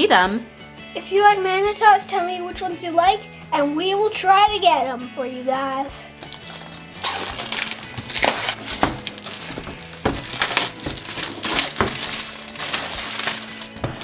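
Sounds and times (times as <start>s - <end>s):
plastic packaging crinkling: 6.2s - 14.0s.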